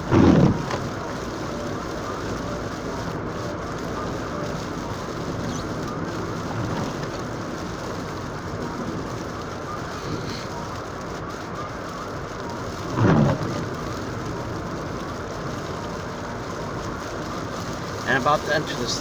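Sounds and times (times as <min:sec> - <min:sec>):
road and tyre noise: 0:00.0 - 0:19.0.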